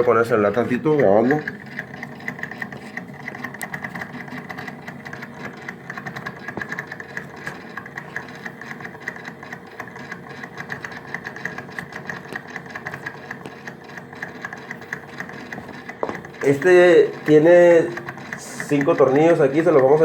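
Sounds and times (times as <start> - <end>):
fan motor rattling and buzzing: 0.0 - 20.0.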